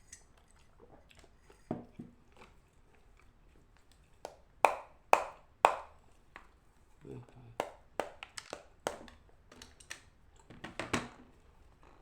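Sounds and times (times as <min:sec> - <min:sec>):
clay block cracking: 0:04.2 - 0:05.9.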